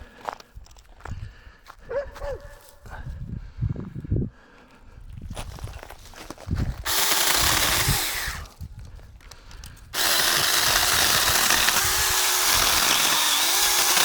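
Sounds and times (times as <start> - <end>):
mini chainsaw cutting wood: 6.8 - 8.6, 9.9 - 14.0.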